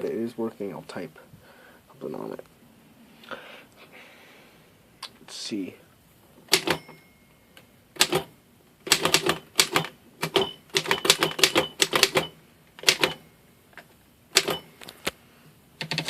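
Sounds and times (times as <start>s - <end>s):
typewriter keys clicking: 6.5s - 6.8s, 8.0s - 8.3s, 8.9s - 13.2s, 14.4s - 14.7s, 15.8s - 16.0s.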